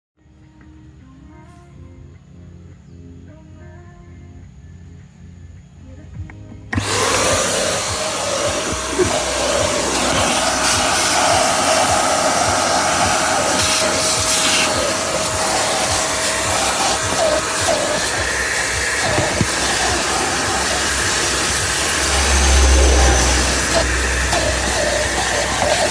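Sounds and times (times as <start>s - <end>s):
vacuum cleaner running: 6.7s - 25.9s.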